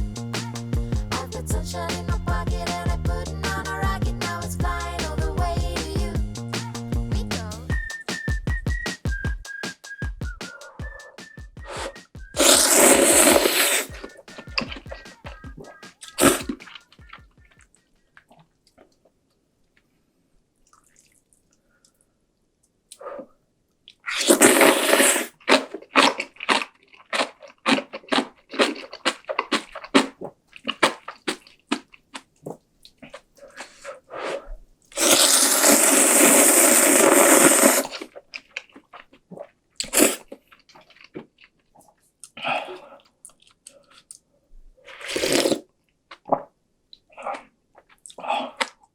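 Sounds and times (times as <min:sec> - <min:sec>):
noodles slurped: 0:10.6 - 0:15.1, 0:23.9 - 0:44.2, 0:44.8 - 0:46.5
crunchy chewing: 0:11.8 - 0:15.0, 0:23.9 - 0:44.2.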